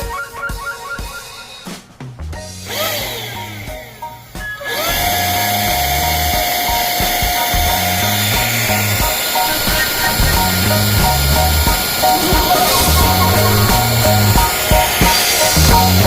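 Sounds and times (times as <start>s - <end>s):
electric motor whining: 4.6s - 16.0s
background music with bass beat: 5.2s - 16.0s.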